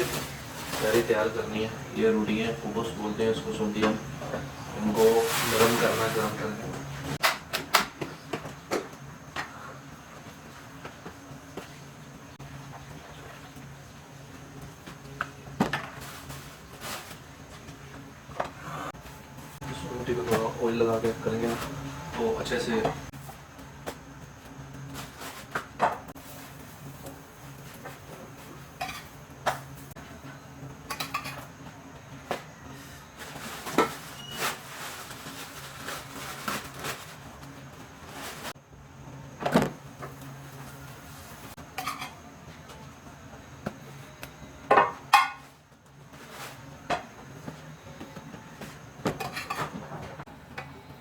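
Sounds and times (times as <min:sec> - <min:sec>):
pan and utensils clinking: 0:28.8 - 0:29.6, 0:30.8 - 0:31.5, 0:41.7 - 0:42.2, 0:49.1 - 0:50.0.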